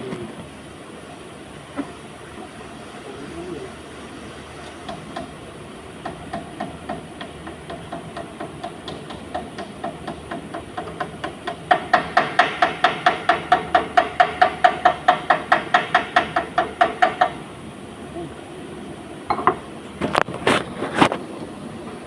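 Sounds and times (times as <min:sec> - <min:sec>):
hammer tapping on metal: 0:04.8 - 0:05.3, 0:06.0 - 0:17.4.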